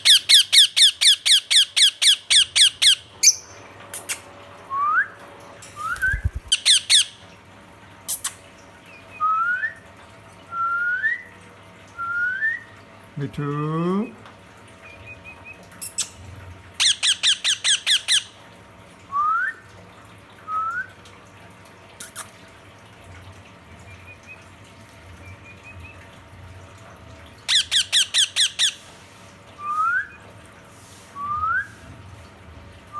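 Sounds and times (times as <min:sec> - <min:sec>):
parrot rising whistles: 0:04.7 - 0:07.1, 0:29.6 - 0:30.2, 0:31.2 - 0:31.8
parrot harsh squawks: 0:06.5 - 0:07.2, 0:27.5 - 0:28.8.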